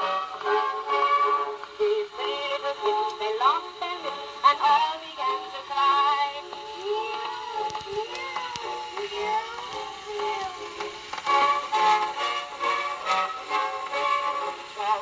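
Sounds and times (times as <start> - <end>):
gramophone record playing: 0.0 - 15.0
voice singing a nursery rhyme: 0.4 - 11.8, 14.3 - 15.0.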